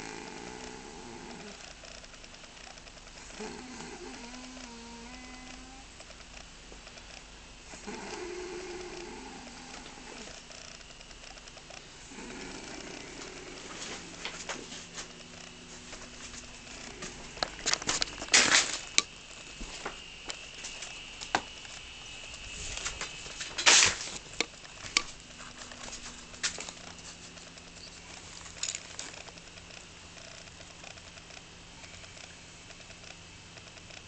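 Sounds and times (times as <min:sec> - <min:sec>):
woman snoring: 0:00.0 - 0:02.0, 0:03.2 - 0:05.9, 0:07.7 - 0:10.8, 0:12.1 - 0:14.2
faint low hum: 0:00.0 - 0:34.0.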